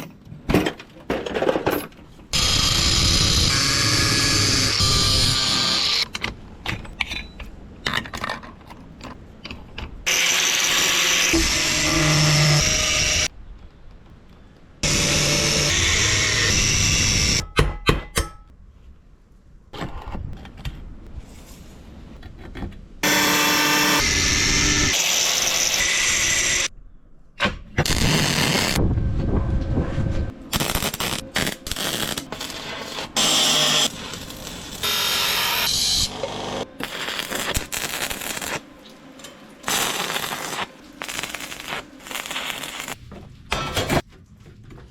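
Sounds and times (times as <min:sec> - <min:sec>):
metalworking power tool: 0:02.4 - 0:06.2, 0:10.1 - 0:13.3, 0:14.8 - 0:17.4, 0:23.0 - 0:26.7, 0:30.5 - 0:38.6.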